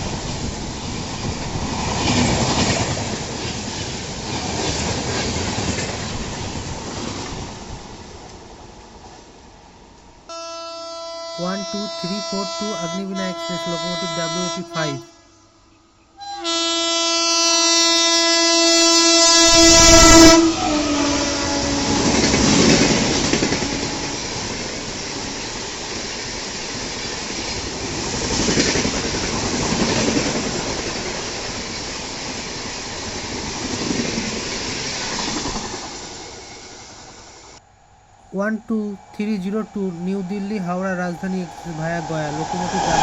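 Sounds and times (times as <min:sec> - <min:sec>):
locomotive horn: 0:10.3 - 0:15.3, 0:16.2 - 0:24.8.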